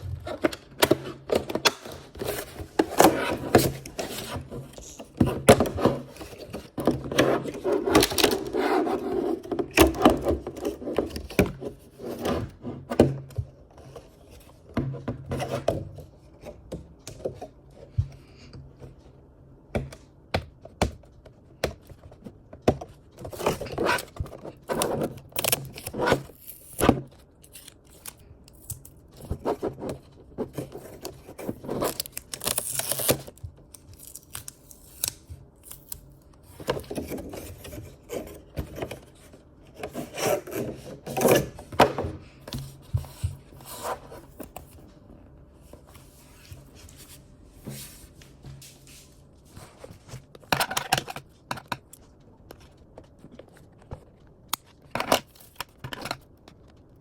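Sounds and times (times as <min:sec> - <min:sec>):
packaging tearing and crinkling: 0:31.7 - 0:36.1.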